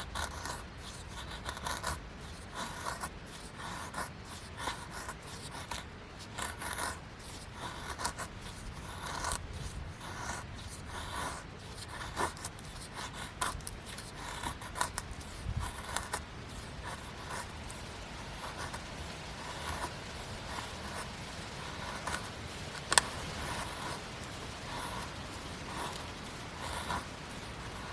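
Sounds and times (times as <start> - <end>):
scraping rubbing strokes: 13.3 - 27.9.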